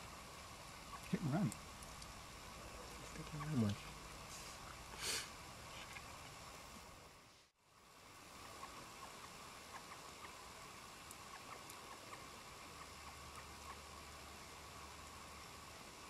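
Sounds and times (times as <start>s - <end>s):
faint background hiss: 0.0s - 16.0s
tiny ticks: 0.9s - 2.2s, 11.0s - 13.9s, 14.9s - 15.2s.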